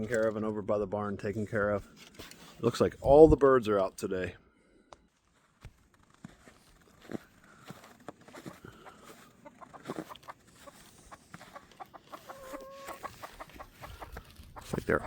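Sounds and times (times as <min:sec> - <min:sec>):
chickens clucking: 0:08.3 - 0:15.0.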